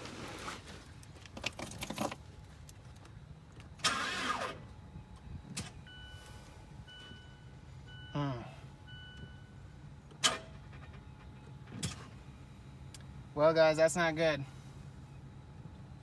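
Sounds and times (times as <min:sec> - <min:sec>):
engine cranking burst: 0:03.8 - 0:04.6
dashboard warning chime beeps: 0:05.0 - 0:09.8.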